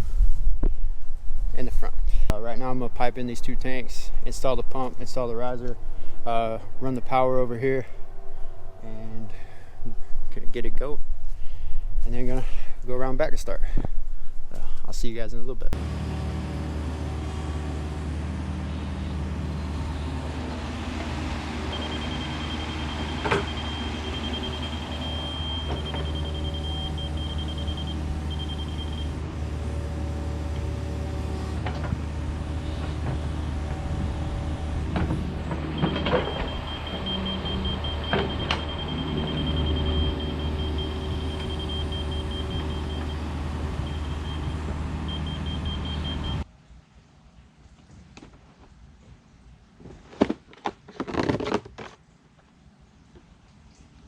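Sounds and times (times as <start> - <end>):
heavy machine engine running: 15.8 - 46.4.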